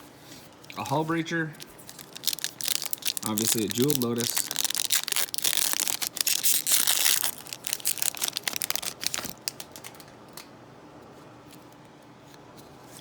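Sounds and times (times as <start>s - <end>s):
foil wrapper crinkling and tearing: 1.6s - 10.5s.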